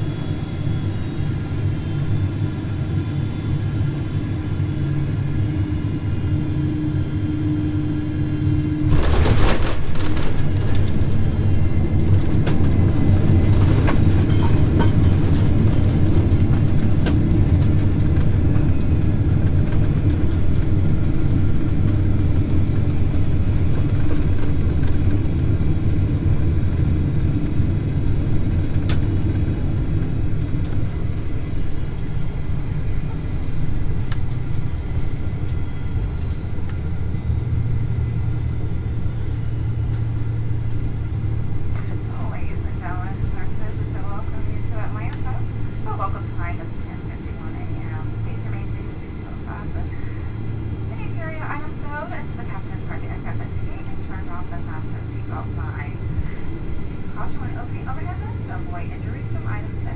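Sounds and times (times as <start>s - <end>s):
aircraft rumble inside cabin: 0.0s - 59.9s
short rattling clatter: 8.9s - 11.2s.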